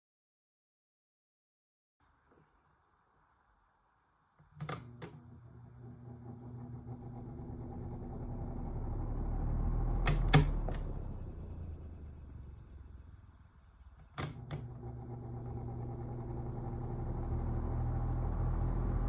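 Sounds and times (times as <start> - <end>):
machine clicks: 4.5 - 5.4, 10.1 - 10.9, 14.0 - 14.7
machine humming and rattling: 4.6 - 19.0.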